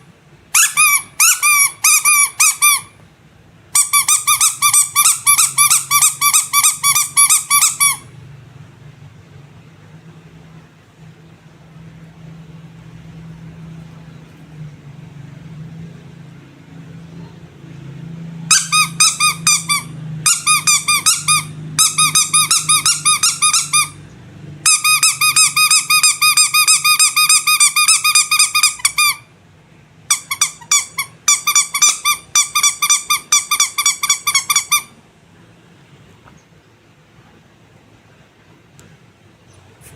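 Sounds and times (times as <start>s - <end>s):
low steady hum: 0.0s - 39.9s
squeaky rubber toy squeaking: 0.5s - 3.0s, 3.7s - 8.2s, 18.4s - 29.3s, 30.1s - 35.0s.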